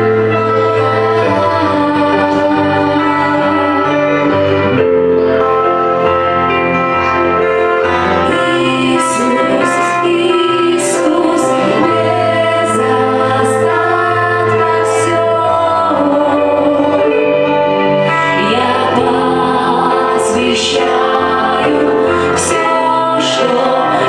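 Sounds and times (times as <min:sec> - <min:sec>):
person singing: 0:00.0 - 0:24.0
steady bass line: 0:00.0 - 0:24.0
sustained keyboard chords: 0:00.0 - 0:24.0.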